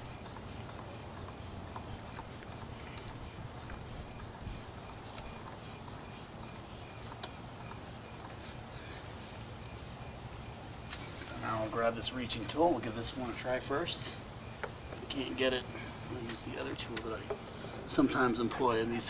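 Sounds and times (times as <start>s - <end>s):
hand pump air puffs: 0.0s - 8.6s
low steady hum: 0.0s - 19.0s.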